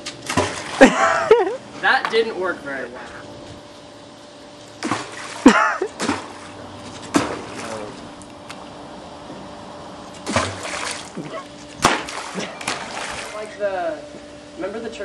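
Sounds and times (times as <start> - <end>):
water splashing: 0.2 - 1.0, 4.8 - 8.2, 10.1 - 13.6.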